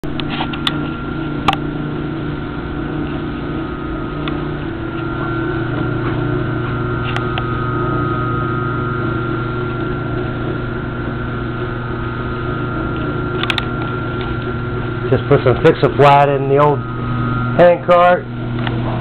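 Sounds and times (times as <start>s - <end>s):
small motor humming: 0.0s - 19.0s.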